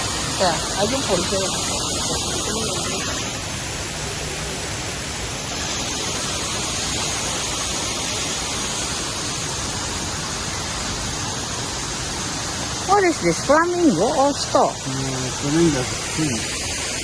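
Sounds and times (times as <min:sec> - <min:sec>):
steady outdoor hiss: 0:00.0 - 0:17.0.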